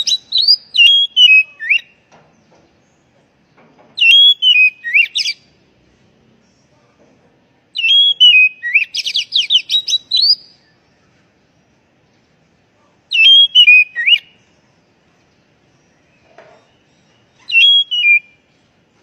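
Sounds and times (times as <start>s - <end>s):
bird singing whistled notes: 0.0s - 2.1s, 4.0s - 5.5s, 7.8s - 11.1s, 13.1s - 14.7s, 15.8s - 18.6s.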